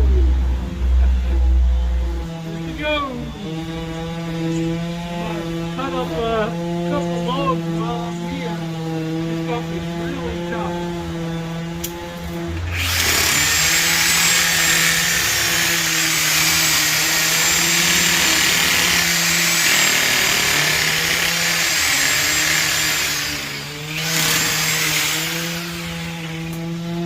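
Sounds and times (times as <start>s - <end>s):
chainsaw cutting wood: 2.1s - 27.0s.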